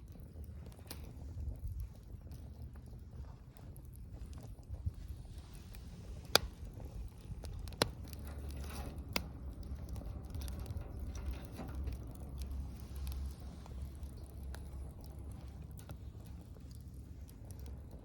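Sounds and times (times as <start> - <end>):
wood fire crackling: 0.0 - 18.0
sharp pops of burning wood: 3.8 - 18.0.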